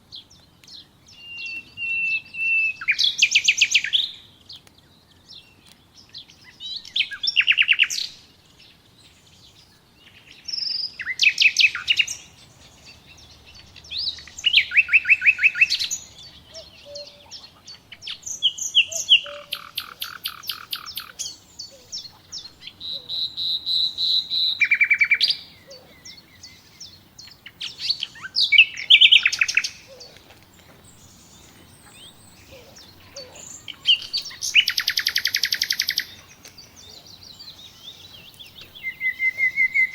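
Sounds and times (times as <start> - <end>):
songbirds whistling and trilling: 0.1 - 39.9.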